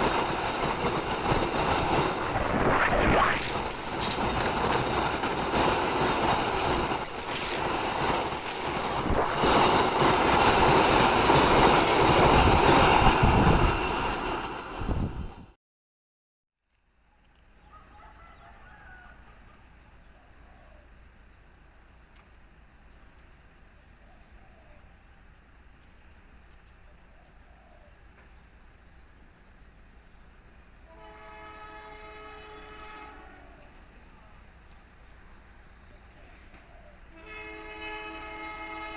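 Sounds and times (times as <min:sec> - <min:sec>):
train wheels on rails: 0:00.0 - 0:15.6, 0:28.0 - 0:38.9
locomotive horn blast: 0:30.8 - 0:33.7, 0:37.1 - 0:38.9.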